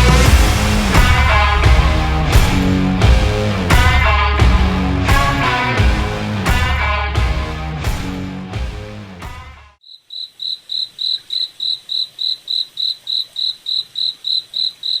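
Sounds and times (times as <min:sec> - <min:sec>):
guitar rock music: 0:00.0 - 0:09.8
insect chirping: 0:09.8 - 0:15.0.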